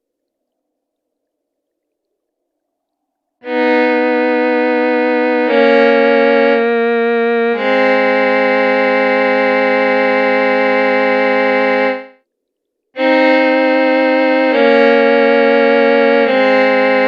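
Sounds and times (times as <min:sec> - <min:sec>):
sustained synthesizer chords: 0:03.4 - 0:12.1, 0:13.0 - 0:17.0.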